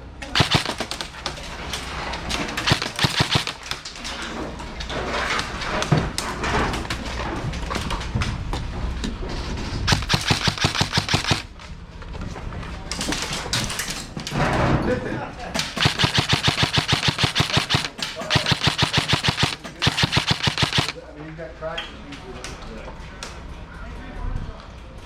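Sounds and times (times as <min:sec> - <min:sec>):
airsoft rifles firing: 0:00.4 - 0:04.1, 0:09.9 - 0:11.5, 0:15.6 - 0:21.0.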